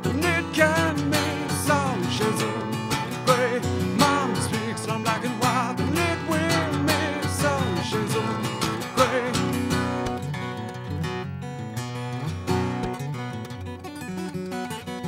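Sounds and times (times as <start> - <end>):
man singing with vibrato: 0.0 - 10.0
acoustic guitar strumming: 0.0 - 15.0.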